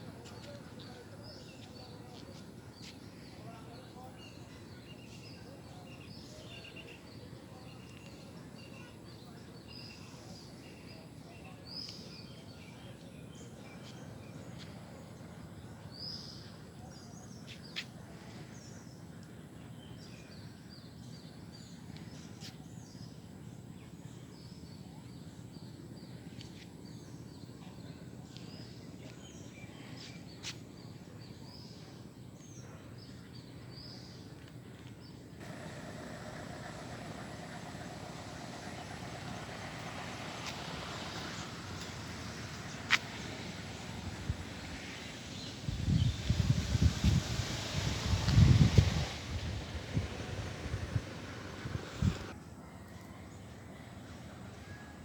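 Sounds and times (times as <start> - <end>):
small birds chirping: 24.4 - 52.3
low background rumble: 35.4 - 44.8, 45.7 - 52.3.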